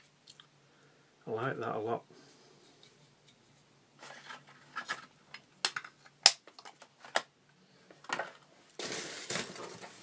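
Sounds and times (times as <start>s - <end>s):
rustling: 2.6s - 5.4s, 7.8s - 10.0s.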